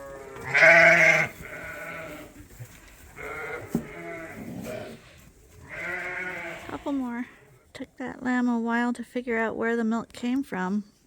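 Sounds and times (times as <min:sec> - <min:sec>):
sheep bleating: 0:00.0 - 0:02.3, 0:03.2 - 0:07.5.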